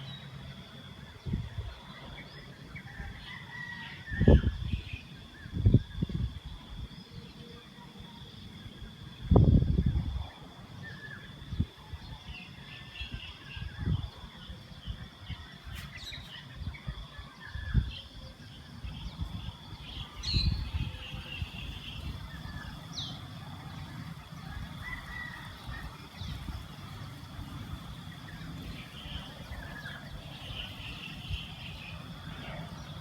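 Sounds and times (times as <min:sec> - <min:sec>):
birds chirping: 0:15.3 - 0:33.0.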